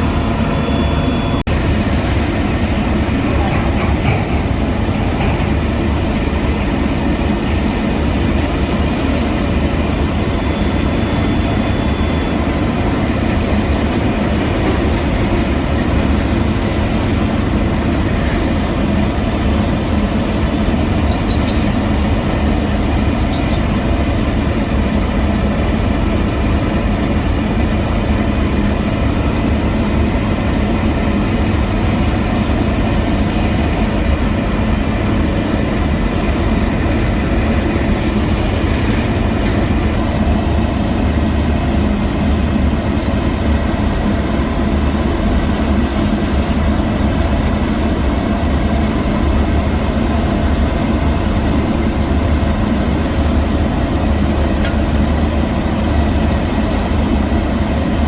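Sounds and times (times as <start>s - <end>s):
short high beep: 0.0s - 6.9s, 39.9s - 41.2s
heavy diesel machinery running: 0.0s - 58.0s.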